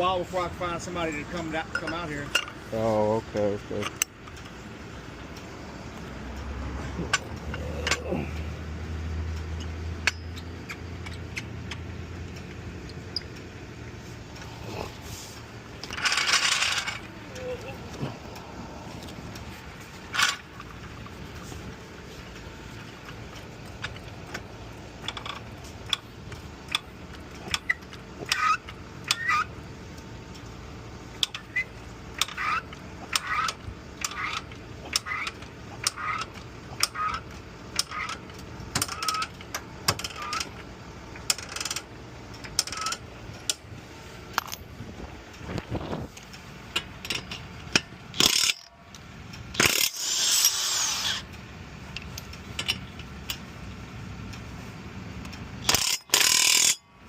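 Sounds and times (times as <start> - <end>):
metal tools clinking: 0.9 - 2.6, 7.0 - 8.4, 9.6 - 11.8, 15.8 - 18.2, 44.3 - 44.8, 46.8 - 49.0, 55.6 - 56.8.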